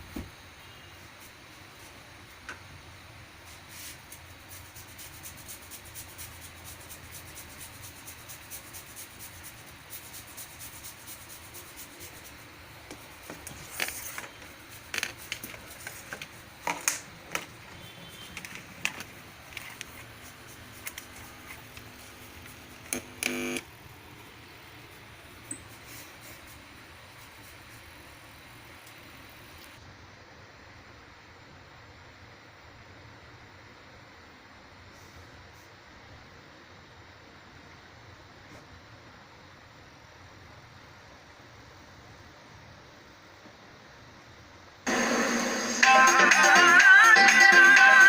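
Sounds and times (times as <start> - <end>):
faint steady hiss: 0.0 - 48.0
brief buzz: 22.9 - 23.6.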